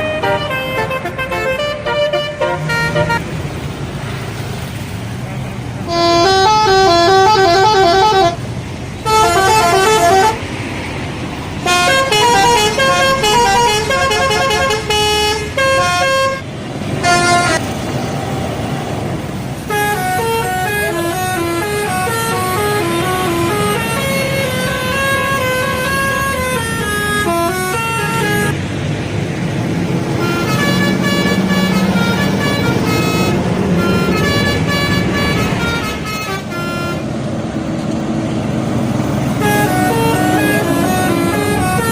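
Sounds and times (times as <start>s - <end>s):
electric air horns playing tunes: 0.0s - 3.3s, 5.8s - 8.4s, 9.0s - 10.5s, 11.6s - 17.6s, 19.7s - 28.6s, 30.2s - 37.1s, 39.3s - 41.9s.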